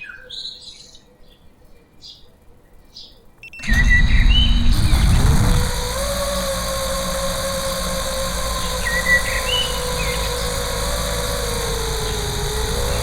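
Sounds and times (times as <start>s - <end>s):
drone propellers whirring: 3.6s - 13.0s.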